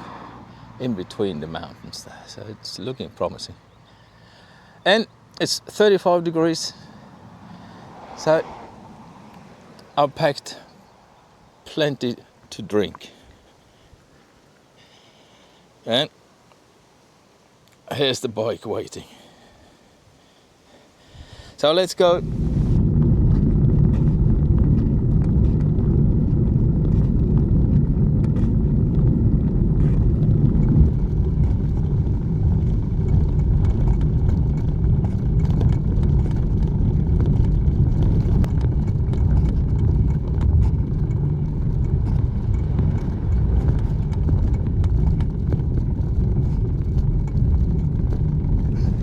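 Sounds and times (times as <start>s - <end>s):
bicycle tyres rolling on road: 5.6s - 10.3s, 21.9s - 49.0s
wind buffeting microphone: 22.0s - 49.0s
small clicks and rattles: 29.8s - 49.0s.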